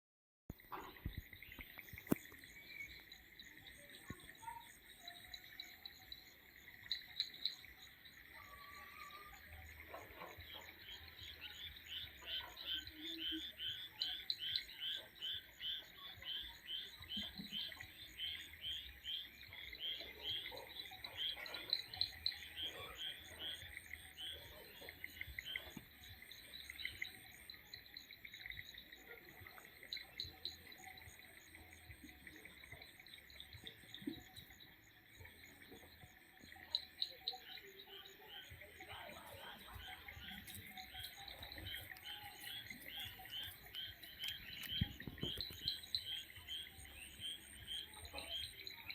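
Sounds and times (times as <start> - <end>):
insects trilling: 0.6 - 48.9
loud insect chirping call: 10.5 - 48.9.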